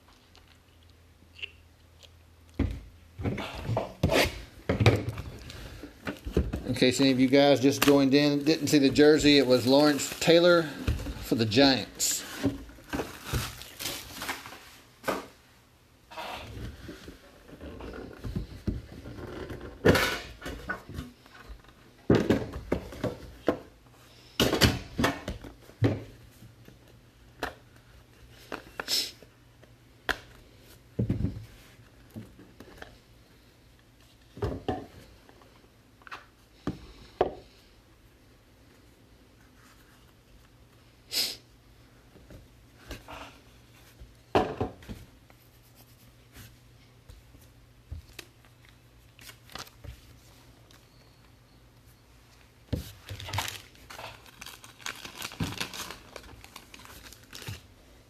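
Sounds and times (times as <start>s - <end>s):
packaging rustling: 6.2s - 14.9s, 52.8s - 57.7s.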